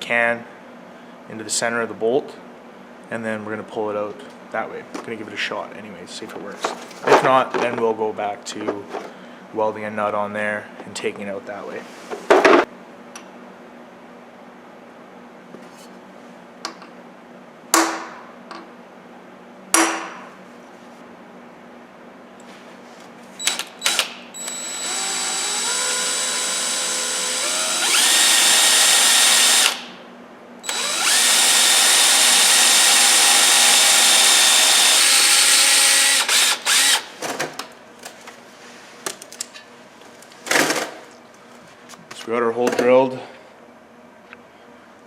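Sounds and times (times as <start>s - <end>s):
electric drill boring into metal: 23.5s - 30.0s, 30.6s - 37.1s.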